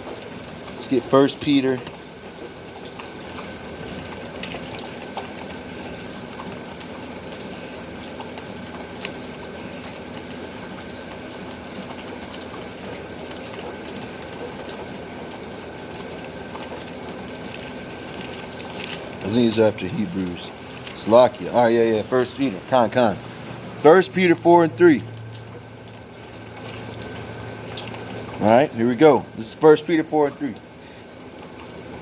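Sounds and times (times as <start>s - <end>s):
steady rain hiss: 15.1s - 25.2s.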